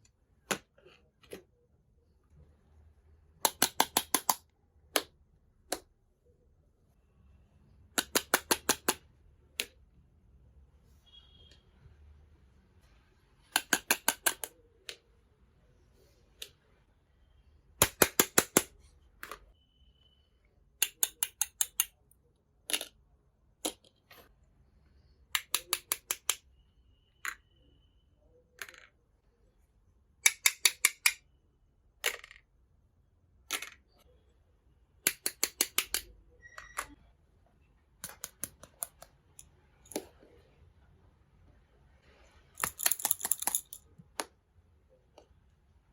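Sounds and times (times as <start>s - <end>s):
small toy pieces clicking: 20.8s - 21.9s, 42.6s - 43.8s.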